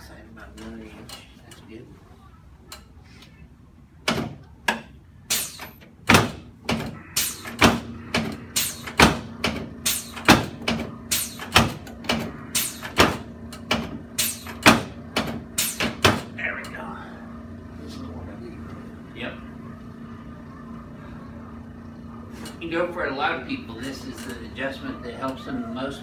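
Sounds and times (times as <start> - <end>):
steady hum: 0.0 - 26.0
sharp clacking knocks: 4.0 - 16.4.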